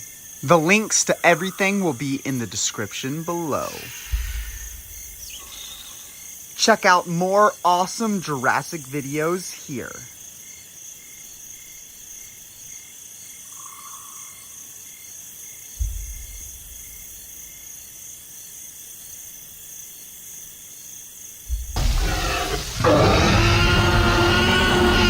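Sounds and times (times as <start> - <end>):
insect-like chirring: 0.0 - 25.0
low rumble: 21.5 - 25.0
loud sound with shifting pitch: 21.8 - 25.0.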